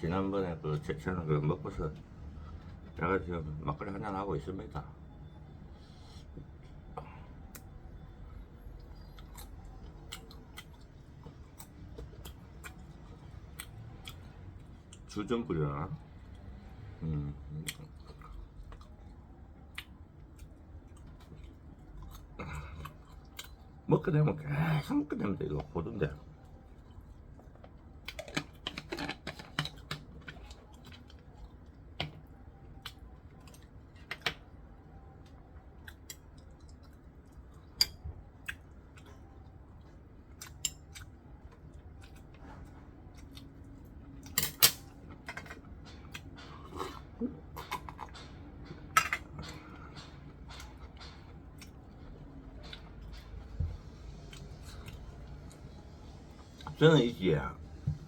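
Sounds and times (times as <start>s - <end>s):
quiet chewing: 8.3s - 15.1s, 17.5s - 23.8s, 35.0s - 44.2s, 45.0s - 56.8s.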